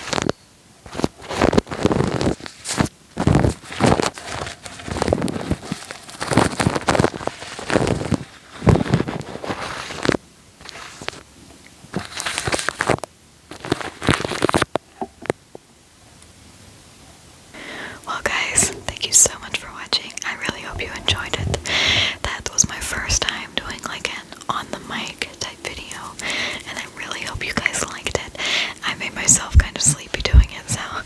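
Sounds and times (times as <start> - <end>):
wet sticky material crackling: 17.6 - 31.0.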